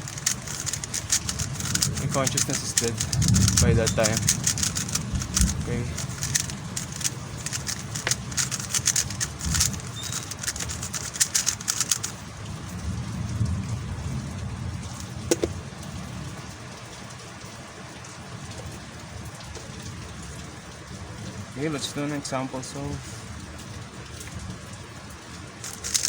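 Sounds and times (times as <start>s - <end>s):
puzzle cube clicking: 0.0s - 12.2s, 15.0s - 15.5s, 25.6s - 26.0s.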